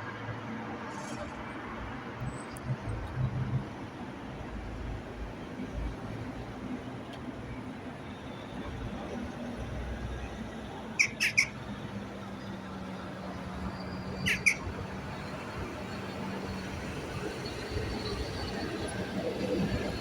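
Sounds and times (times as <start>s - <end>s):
city traffic hum: 0.0s - 20.0s
crow squawking: 11.0s - 11.5s, 14.2s - 14.6s.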